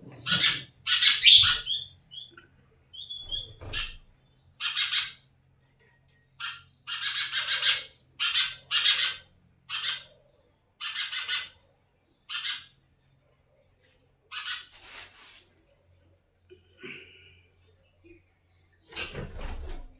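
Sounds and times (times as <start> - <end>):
sparrows raspy chirping: 0.0 - 14.7.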